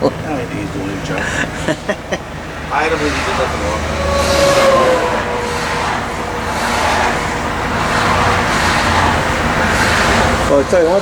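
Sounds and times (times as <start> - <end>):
highway traffic rushing: 0.0 - 11.0
whine dropping in pitch: 2.8 - 9.2.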